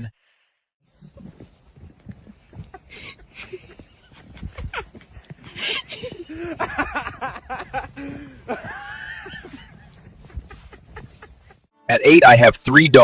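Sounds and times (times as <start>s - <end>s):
laughter: 2.5s - 11.7s
people talking: 11.9s - 13.0s.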